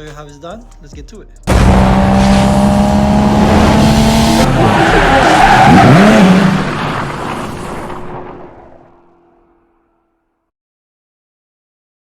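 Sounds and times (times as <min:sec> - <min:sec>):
race car tyres squealing: 0:03.6 - 0:09.1.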